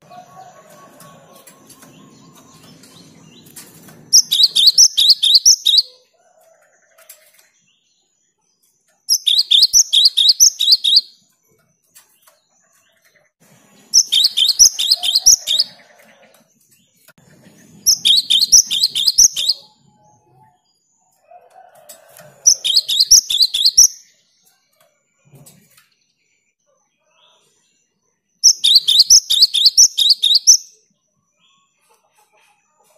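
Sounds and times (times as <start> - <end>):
bird singing rapid high notes: 4.2 - 5.9, 9.1 - 11.2, 13.9 - 15.8, 17.8 - 19.8, 22.5 - 24.1, 28.4 - 30.8.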